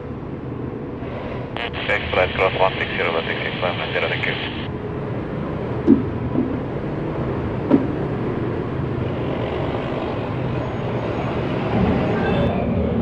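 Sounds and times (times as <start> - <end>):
distant engine rumble: 5.6 - 10.6.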